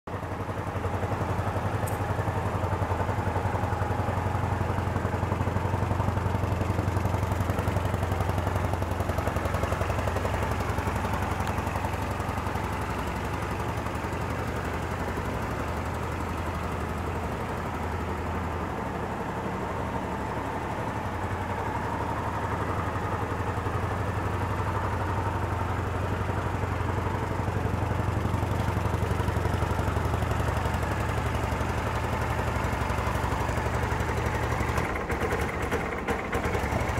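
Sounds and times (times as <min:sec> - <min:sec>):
motorcycle engine idling: 0:00.1 - 0:36.9.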